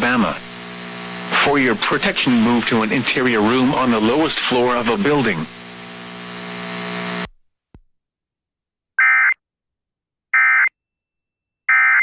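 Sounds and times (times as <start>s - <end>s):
steady radio hum: 0.0s - 7.3s.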